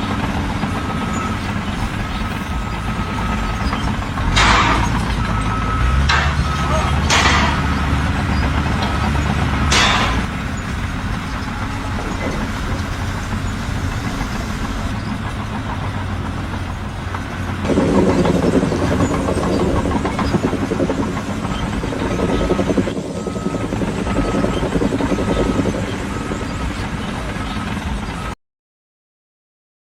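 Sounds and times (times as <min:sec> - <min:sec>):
heavy machine engine running: 0:00.0 - 0:28.4.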